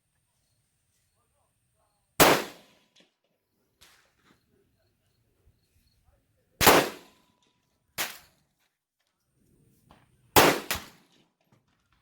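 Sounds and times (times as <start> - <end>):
rifle shots with echo: 2.2 - 3.0, 6.6 - 7.2, 10.4 - 11.1.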